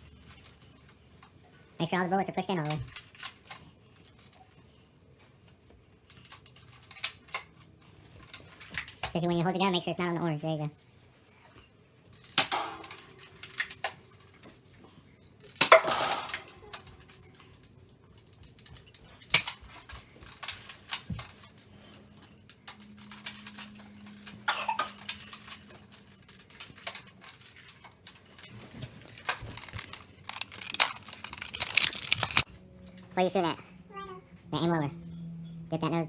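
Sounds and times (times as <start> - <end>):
toy blaster clicking and firing: 29.1 - 32.5.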